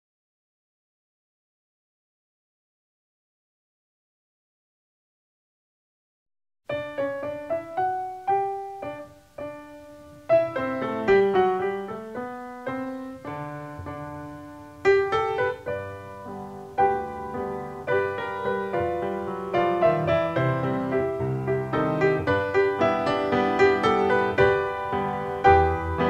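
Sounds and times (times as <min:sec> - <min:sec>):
solo piano melody: 0:06.7 - 0:26.0.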